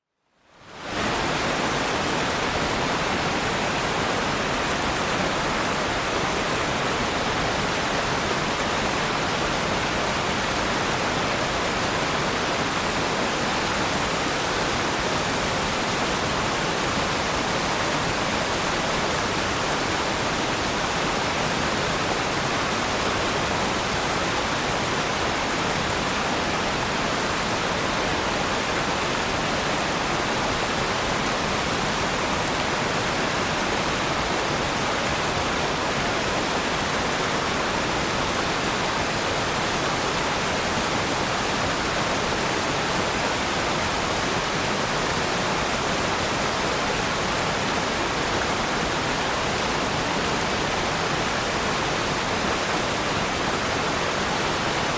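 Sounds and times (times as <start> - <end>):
waterfall rushing: 0.6 - 54.9.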